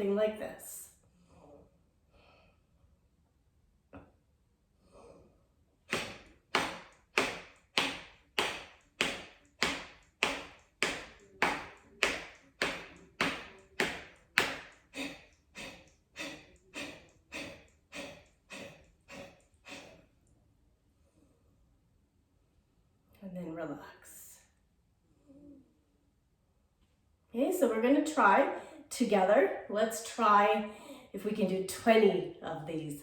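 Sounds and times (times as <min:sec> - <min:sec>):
sharp nasal exhales: 0:05.9 - 0:11.7, 0:12.6 - 0:20.0.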